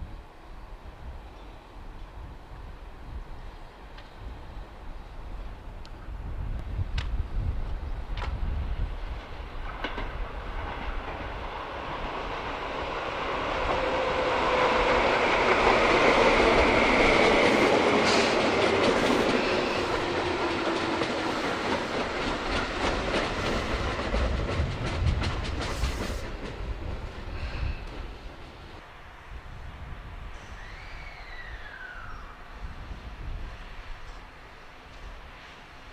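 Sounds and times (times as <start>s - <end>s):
electric train passing: 1.4s - 35.9s
train wheels clicking over rail joints: 6.6s - 28.8s.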